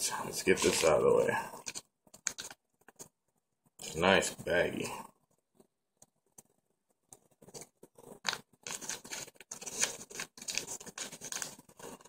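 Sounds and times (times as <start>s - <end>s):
plastic bag rustling and crinkling: 0.3s - 2.6s, 7.4s - 12.0s.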